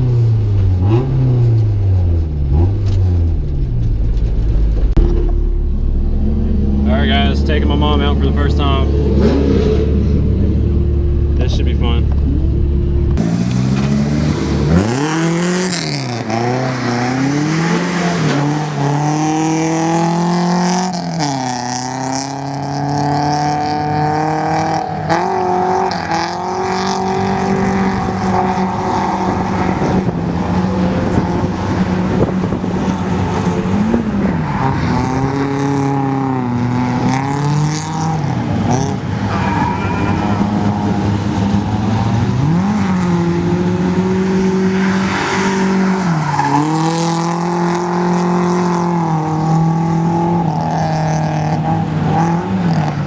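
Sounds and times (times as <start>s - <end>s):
car engine revving: 0.0s - 53.0s
tyre squeal: 38.8s - 41.1s.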